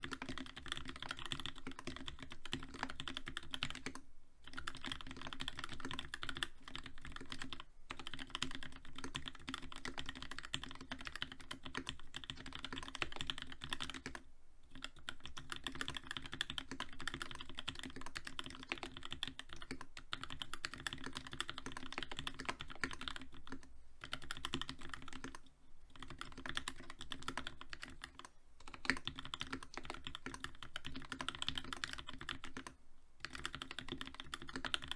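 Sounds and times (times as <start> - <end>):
mechanical keyboard typing: 0.0 - 34.9.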